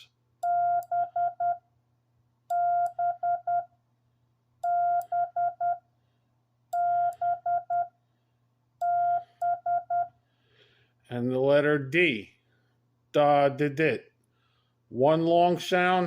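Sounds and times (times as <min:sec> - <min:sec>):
morse code sidetone beeps: 0:00.4 - 0:01.6, 0:02.5 - 0:03.7, 0:04.6 - 0:05.8, 0:06.8 - 0:08.0, 0:08.8 - 0:10.2.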